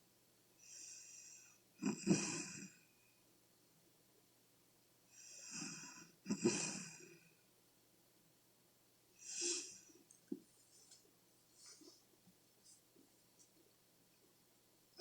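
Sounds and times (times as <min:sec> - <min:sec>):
woman snoring loudly: 0:01.8 - 0:02.7
soft hissing breath: 0:09.2 - 0:10.0.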